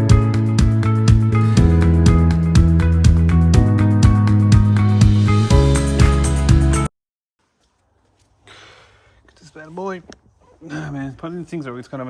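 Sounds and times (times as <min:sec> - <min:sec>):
background music with steady beat: 0:00.0 - 0:06.9.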